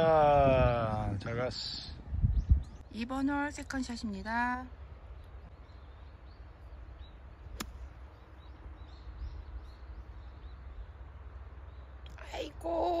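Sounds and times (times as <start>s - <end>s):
wind rumble on microphone: 0.0s - 2.9s
birds chirping: 0.9s - 13.0s
golf club striking ball: 7.6s - 7.9s.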